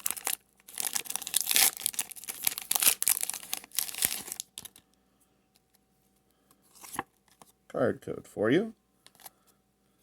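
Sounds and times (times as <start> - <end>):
foil wrapper crinkling: 0.0 - 4.8.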